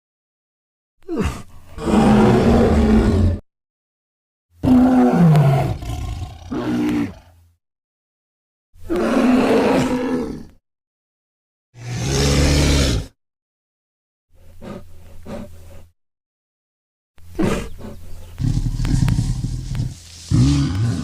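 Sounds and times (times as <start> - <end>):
bear roaring: 1.1 - 3.4, 4.6 - 7.4, 8.9 - 10.6, 11.8 - 13.2, 17.4 - 21.0.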